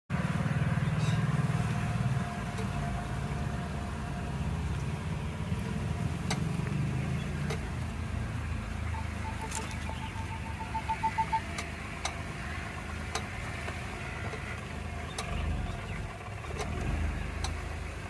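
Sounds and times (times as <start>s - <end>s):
car engine low rumble: 0.1s - 18.0s
clicks from rear wheel: 6.2s - 6.8s, 7.4s - 7.8s, 9.3s - 12.2s, 13.1s - 17.7s.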